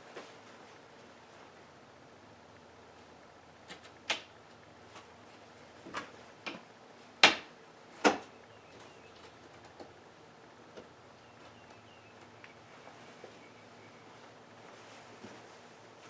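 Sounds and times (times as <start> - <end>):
taps and knocks on wooden frame: 5.8 - 8.3.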